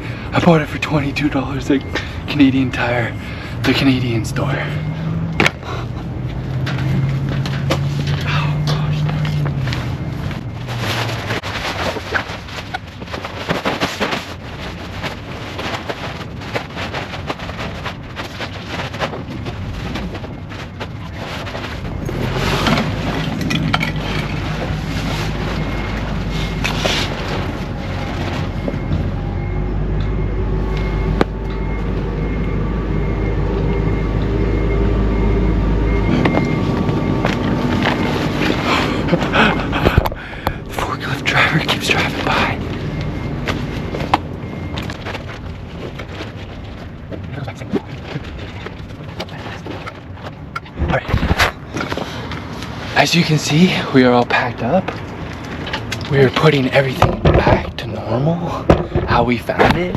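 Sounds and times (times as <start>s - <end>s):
forklift engine humming: 0.0s - 55.9s
rubbing on clip-on microphone: 10.8s - 14.4s, 49.1s - 51.9s
camping gear rustling and knocking: 11.0s - 17.2s.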